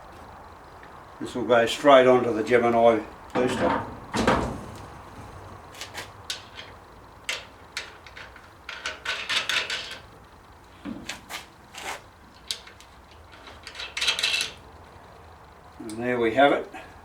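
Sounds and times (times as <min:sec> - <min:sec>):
metal parts clinking and scraping: 0:03.3 - 0:10.1, 0:11.1 - 0:14.6.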